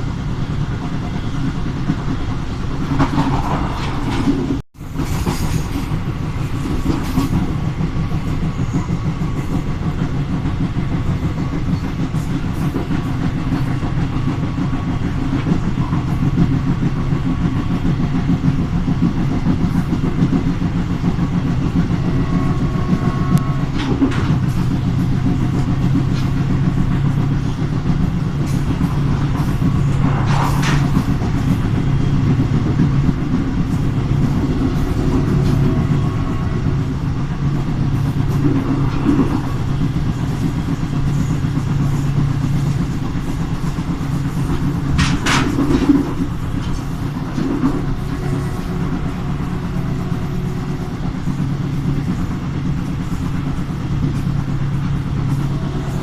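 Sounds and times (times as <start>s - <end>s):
train rumbling on rails: 0.0s - 56.0s
low engine hum: 5.6s - 56.0s.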